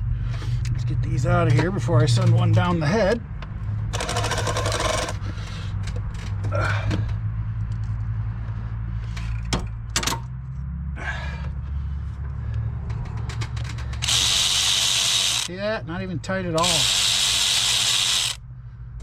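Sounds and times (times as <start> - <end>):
power tool spinning bolt: 3.9 - 5.2, 13.9 - 15.5, 16.6 - 18.4.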